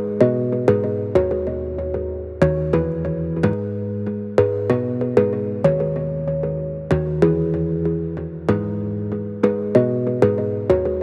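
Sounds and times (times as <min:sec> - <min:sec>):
plucked-string chords music: 0:00.0 - 0:11.0.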